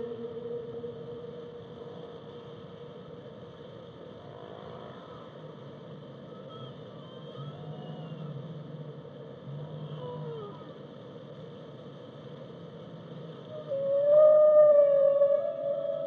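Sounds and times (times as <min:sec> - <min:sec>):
whale calls: 0:13.5 - 0:16.0.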